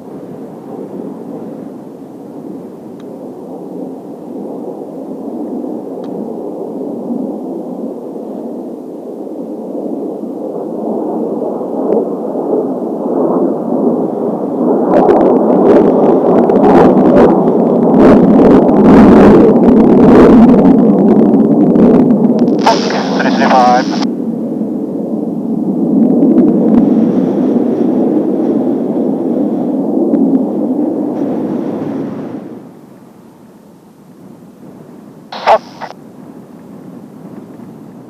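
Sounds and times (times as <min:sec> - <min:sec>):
jet engines roaring: 0:22.4 - 0:24.1, 0:35.3 - 0:36.0.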